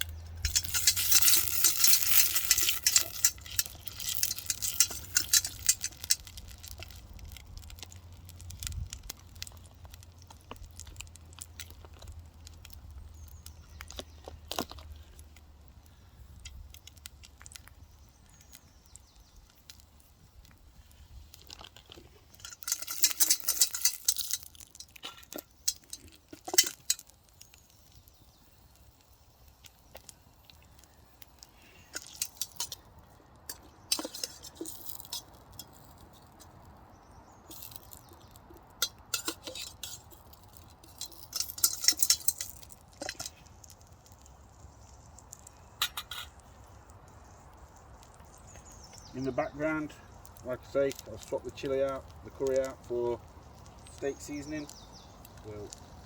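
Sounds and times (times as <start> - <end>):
utensil stirring in frying pan: 0.0 - 8.6, 20.8 - 28.6, 37.5 - 46.6
campfire crackling: 0.0 - 56.0.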